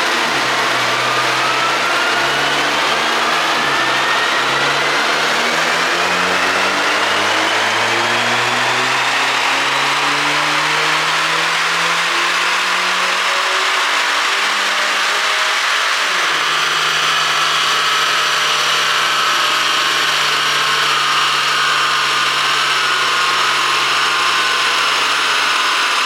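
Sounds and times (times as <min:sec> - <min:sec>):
car engine revving under load: 0:00.0 - 0:26.0
high turbo whine: 0:00.0 - 0:26.0.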